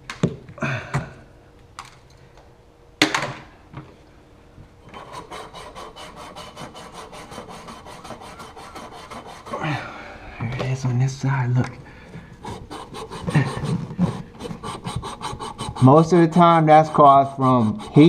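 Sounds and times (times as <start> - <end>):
abrasive scrubbing copper pipe: 4.9 - 9.6, 12.4 - 18.0.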